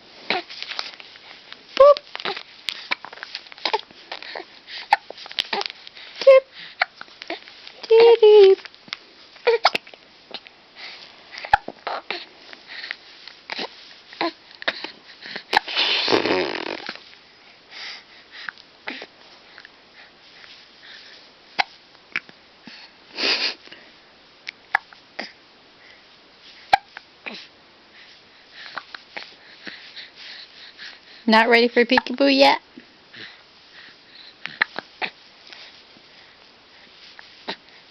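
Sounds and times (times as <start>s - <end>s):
baby hiccupping: 9.5s - 10.4s, 11.4s - 12.2s.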